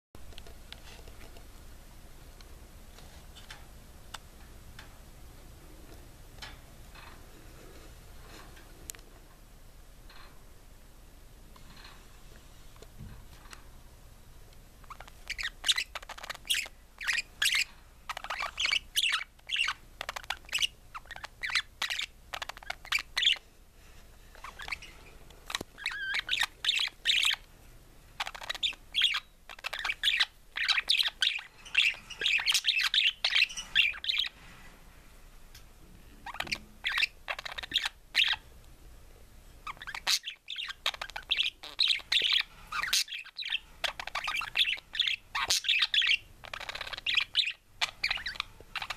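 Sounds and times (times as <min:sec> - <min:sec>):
budgerigar chirping and warbling: 0:14.9 - 0:23.4, 0:24.5 - 0:27.4, 0:28.2 - 0:34.3, 0:36.2 - 0:38.4, 0:39.6 - 0:48.9.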